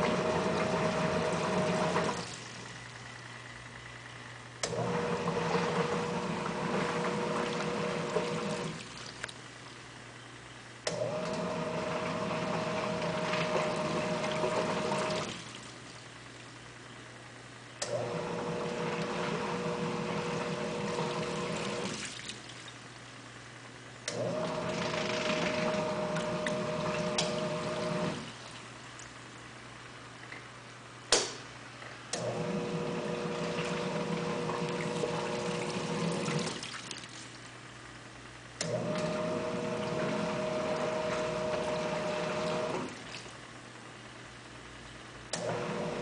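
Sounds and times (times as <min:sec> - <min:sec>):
washing machine motor: 0:00.0 - 0:09.3, 0:10.8 - 0:16.2, 0:17.8 - 0:22.7, 0:24.0 - 0:28.7, 0:32.1 - 0:37.3, 0:38.6 - 0:43.4, 0:45.3 - 0:46.0
water sloshing in tub: 0:04.7 - 0:09.5, 0:11.1 - 0:16.6, 0:20.2 - 0:22.9, 0:24.1 - 0:29.2, 0:32.2 - 0:37.6, 0:38.6 - 0:43.5.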